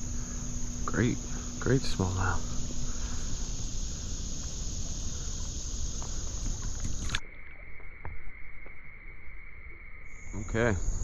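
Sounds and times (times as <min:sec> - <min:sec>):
insects droning: 0:00.0 - 0:11.0
low insect whine: 0:00.0 - 0:11.0
creek water sloshing: 0:02.6 - 0:07.3.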